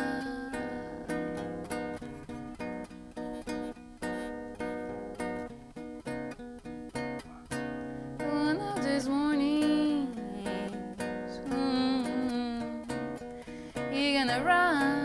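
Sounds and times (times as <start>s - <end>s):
woman singing: 0.0s - 1.6s, 8.2s - 15.0s
acoustic guitar strumming: 0.0s - 15.0s.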